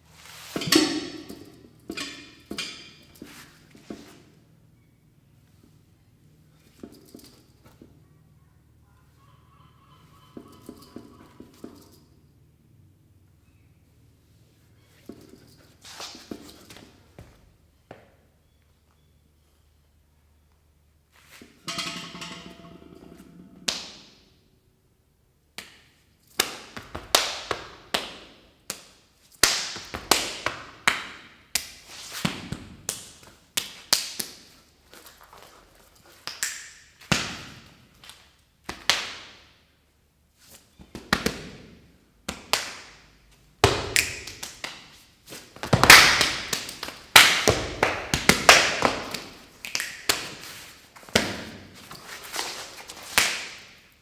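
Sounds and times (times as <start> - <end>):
body percussion slaps and taps: 25.6 - 34.6, 36.2 - 39.5, 40.8 - 53.8.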